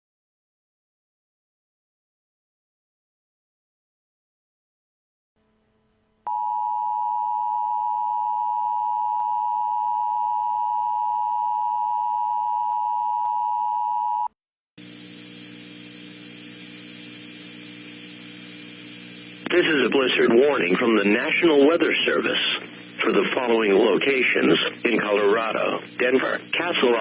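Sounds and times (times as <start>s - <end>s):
loud steady dual tone: 5.4s - 27.0s
faint broadcast hum and hiss: 14.8s - 27.0s.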